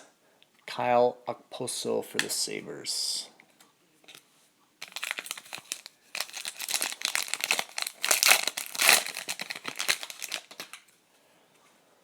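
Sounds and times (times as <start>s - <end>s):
foil wrapper crinkling: 4.8s - 10.9s.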